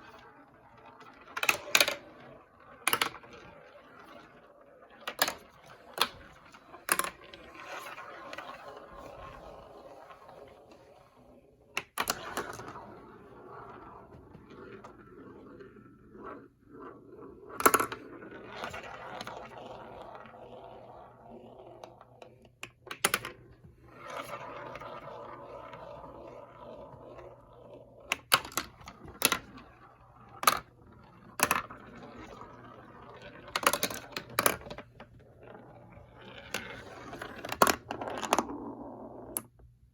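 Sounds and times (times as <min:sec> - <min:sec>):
marbles rattling down plastic track: 0:00.0 - 0:11.0, 0:11.8 - 0:39.5
marbles clacking: 0:00.1 - 0:10.7, 0:11.7 - 0:39.5.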